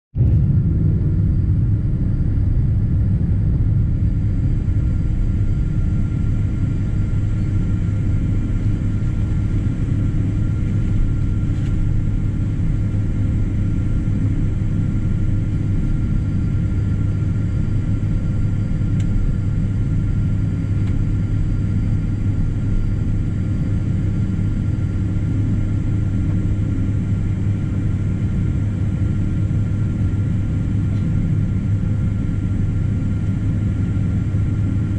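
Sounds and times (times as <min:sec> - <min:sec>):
airliner engines heard from cabin: 0:00.2 - 0:34.9.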